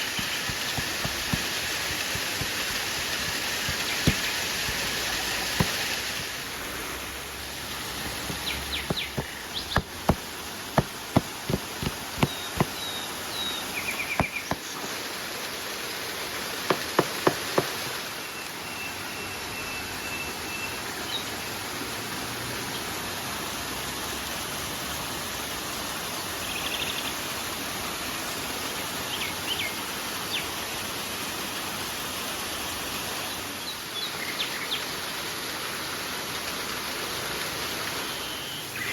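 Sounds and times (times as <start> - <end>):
sharp knocks: 0.0 - 6.3, 8.0 - 12.8, 14.2 - 14.6
river water rushing: 0.0 - 18.1.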